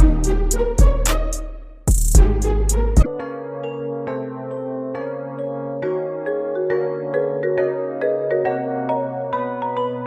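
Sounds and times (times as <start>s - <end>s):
beat with bass hits: 0.0s - 3.1s
sustained keyboard chords: 0.0s - 10.0s.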